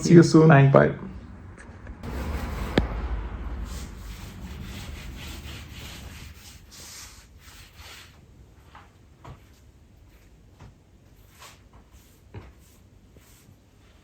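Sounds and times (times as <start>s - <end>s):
rubbing strokes on wood: 2.0s - 8.2s.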